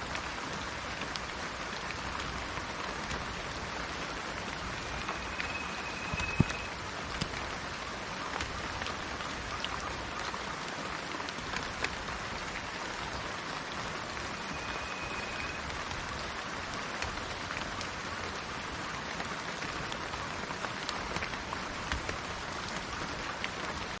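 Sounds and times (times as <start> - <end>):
steady rain falling: 0.0 - 24.0
faint high whistle-like tone: 4.7 - 6.8, 14.3 - 15.7.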